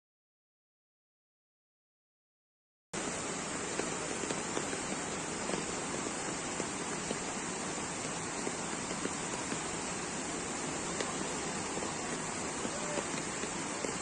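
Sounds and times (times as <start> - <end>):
heavy rain hissing: 3.0 - 14.0
raindrops ticking on surfaces: 3.0 - 14.0.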